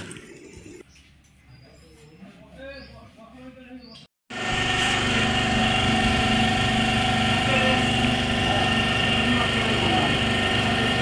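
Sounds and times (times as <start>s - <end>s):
small engine idling: 4.3s - 11.0s.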